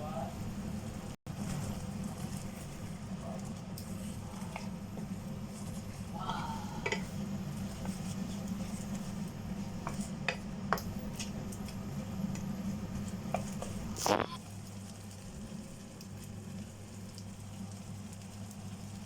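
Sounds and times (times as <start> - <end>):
steady low hum: 0.0 - 14.5.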